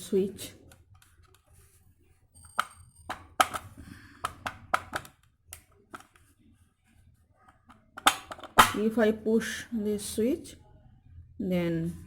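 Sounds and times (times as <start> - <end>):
plastic parts clicking and tapping: 2.5 - 6.3, 7.5 - 8.8.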